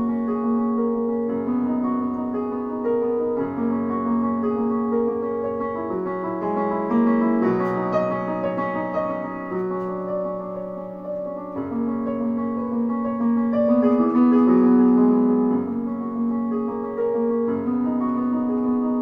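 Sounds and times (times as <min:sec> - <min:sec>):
solo piano piece: 0:00.0 - 0:19.0.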